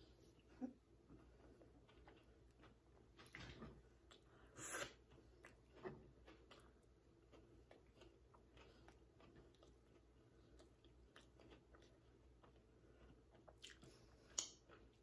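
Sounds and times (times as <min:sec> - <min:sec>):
person chewing food: 0:00.0 - 0:15.0.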